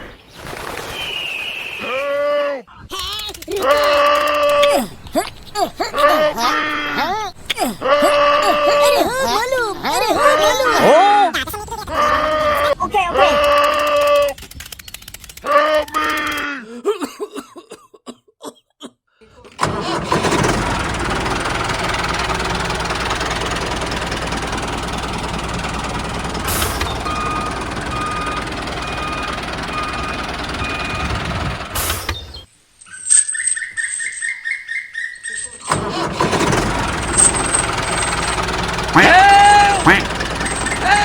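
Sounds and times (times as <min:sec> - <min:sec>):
engine starting and running: 0:03.4 - 0:11.0, 0:19.3 - 0:32.5, 0:35.4 - 0:41.0.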